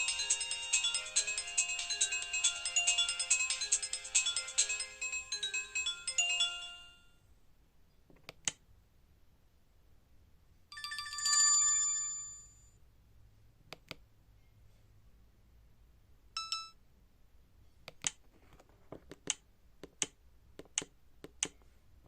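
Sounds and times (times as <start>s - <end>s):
phone ringtone chime: 0.0s - 7.2s, 10.7s - 12.6s.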